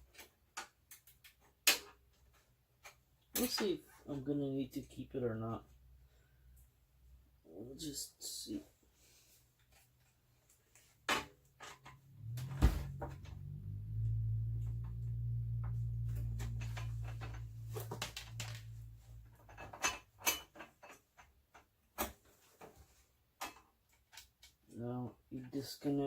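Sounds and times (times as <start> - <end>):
low steady hum: 11.8 - 20.4.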